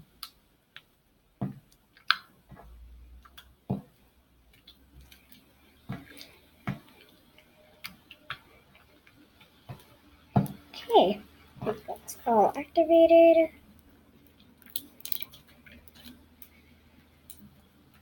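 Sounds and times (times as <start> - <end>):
slime squishing while kneaded: 0.0 - 18.0
sticky slime pops: 1.5 - 2.3.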